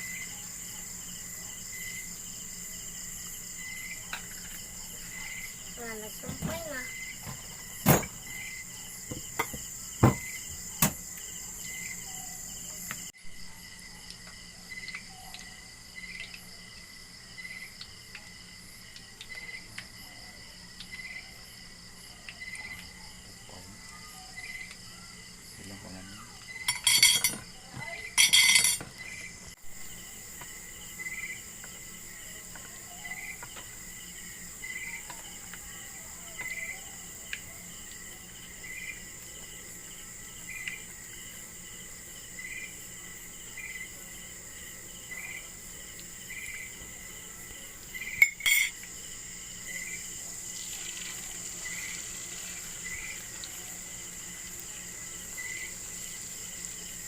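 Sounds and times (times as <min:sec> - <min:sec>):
crickets chirping: 0:00.0 - 0:57.0
cutlery clinking: 0:26.7 - 0:27.5, 0:28.2 - 0:28.9, 0:48.2 - 0:48.9.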